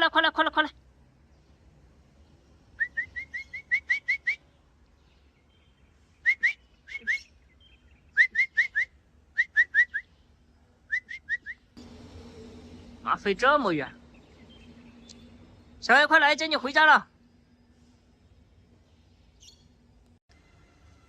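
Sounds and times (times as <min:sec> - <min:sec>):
rising whistled chirps: 0:06.2 - 0:10.2, 0:10.9 - 0:13.1.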